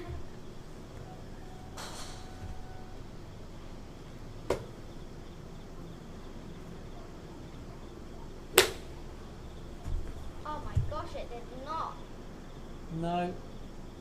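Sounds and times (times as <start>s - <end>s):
golf club striking ball: 8.5s - 9.0s.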